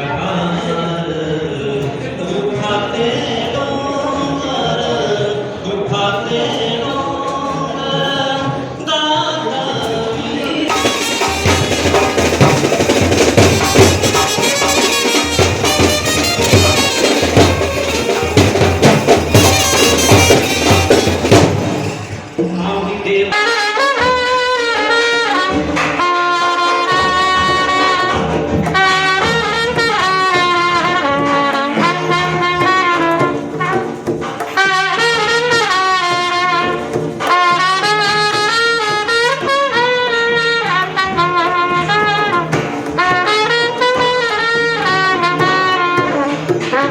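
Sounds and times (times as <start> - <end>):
drums beating: 1.6 - 46.9
shehnai melody: 10.7 - 22.3, 23.3 - 46.9.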